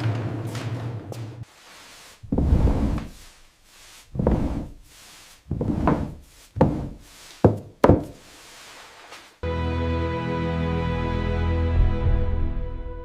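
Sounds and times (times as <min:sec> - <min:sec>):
dull heavy thuds: 0:02.2 - 0:03.4.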